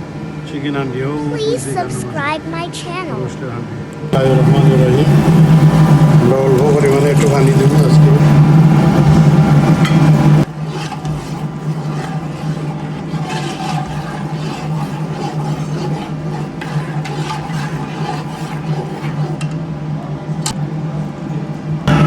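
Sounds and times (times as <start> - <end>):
steady low hum: 0.0 - 22.0
spoon scraping in pot: 4.2 - 19.5.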